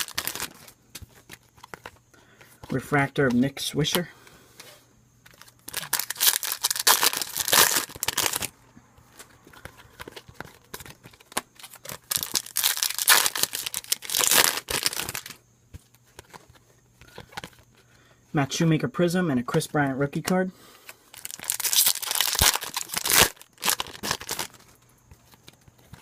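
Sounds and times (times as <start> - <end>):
foil wrappers crinkling and tearing: 0.0 - 2.0, 5.3 - 8.5, 9.2 - 15.4, 21.1 - 26.0
cards clicking and tapping: 0.3 - 4.0, 9.0 - 12.3.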